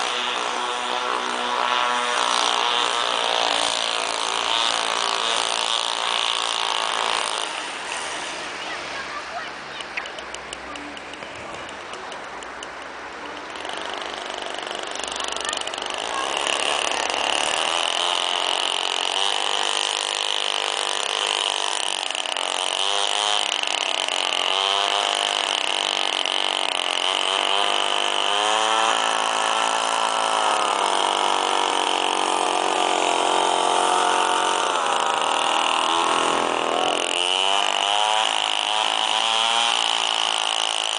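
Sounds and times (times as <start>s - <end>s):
two-stroke engine revving: 0.0s - 40.9s.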